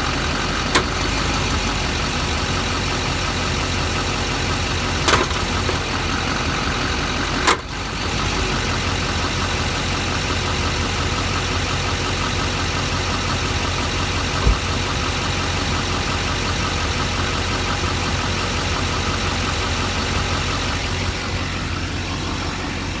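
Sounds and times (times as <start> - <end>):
diesel engine idling: 0.0 - 23.0
transmission clunk: 0.6 - 1.1, 5.0 - 5.9, 7.4 - 7.7, 14.2 - 15.3.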